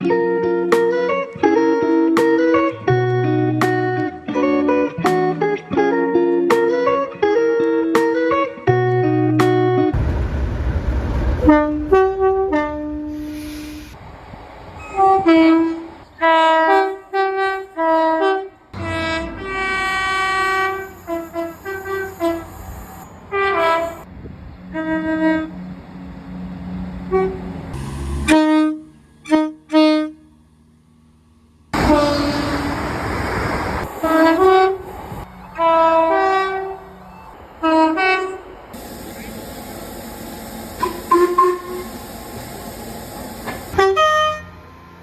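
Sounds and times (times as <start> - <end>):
passing train rumble: 9.9 - 45.0
train horn toots and blasts: 14.8 - 30.6, 31.8 - 32.9, 33.8 - 45.0.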